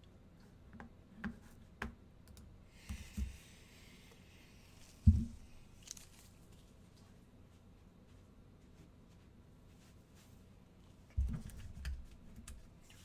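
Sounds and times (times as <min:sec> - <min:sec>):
soft rustle: 0:04.7 - 0:11.1
heavy thump: 0:05.1 - 0:05.4.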